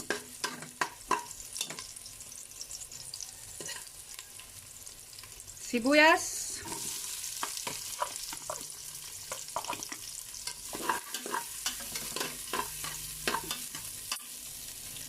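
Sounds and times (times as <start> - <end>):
garlic and onion sizzling: 0.0 - 15.0
spatula scraping pan: 3.6 - 3.9, 6.6 - 14.4.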